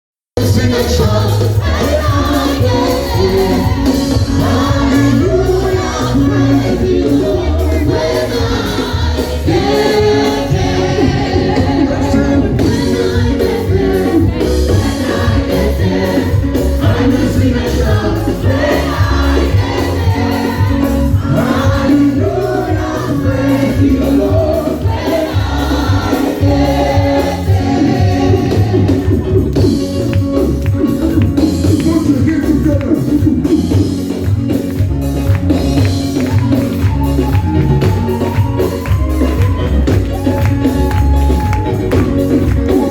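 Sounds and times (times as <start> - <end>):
group singing gospel: 0.4 - 32.4
heavy bass line: 0.4 - 42.9
steady drum beat: 0.4 - 42.9.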